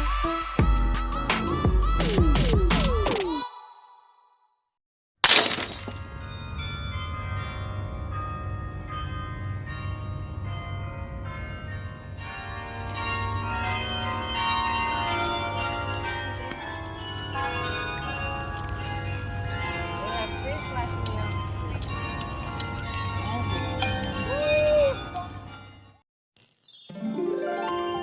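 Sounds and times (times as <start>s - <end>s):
carillon bells playing a tune: 12.2s - 28.0s.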